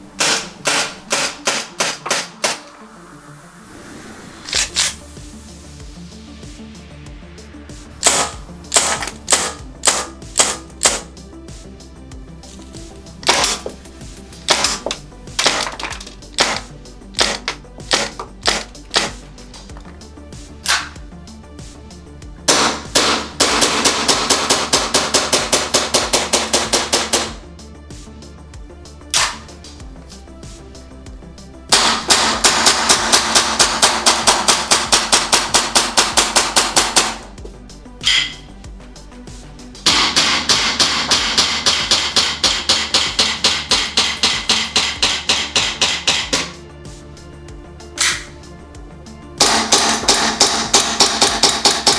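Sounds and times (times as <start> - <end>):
background music: 0.0 - 51.9
airsoft gun shots: 0.2 - 2.7, 8.0 - 11.1, 13.2 - 13.7, 14.5 - 19.7, 20.6 - 21.0, 22.5 - 27.4, 29.1 - 29.5, 31.7 - 37.3, 38.0 - 38.4, 39.9 - 46.6, 48.0 - 48.3, 49.4 - 51.9.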